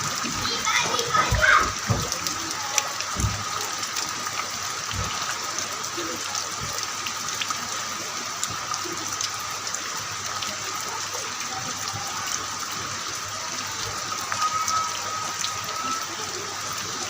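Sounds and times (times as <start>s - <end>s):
raindrop ticks: 0.0s - 7.6s
heavy rain falling: 0.0s - 17.0s
faint steady high tone: 14.2s - 16.7s.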